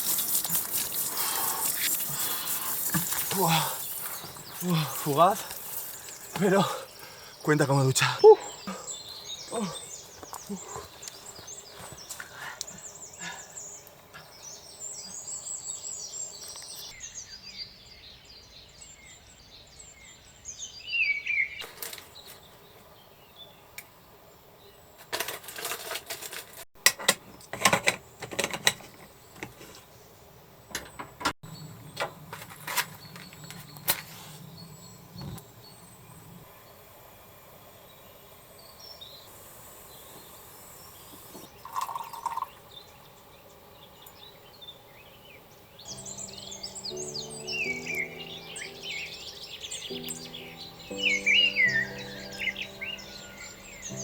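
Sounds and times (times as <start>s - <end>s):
birds chirping: 0.0s - 24.9s, 28.8s - 54.0s.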